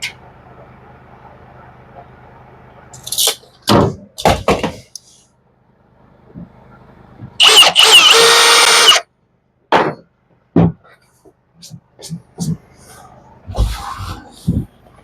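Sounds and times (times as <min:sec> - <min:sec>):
small power tool whining: 0:07.4 - 0:09.0.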